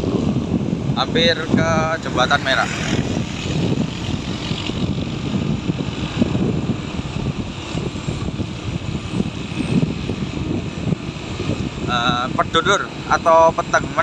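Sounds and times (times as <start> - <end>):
vehicle engine running: 0.0 - 14.0
wind on microphone: 0.0 - 14.0.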